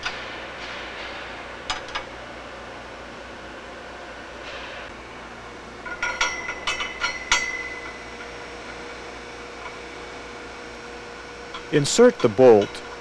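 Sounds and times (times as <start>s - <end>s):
metal parts clinking: 5.8s - 8.0s.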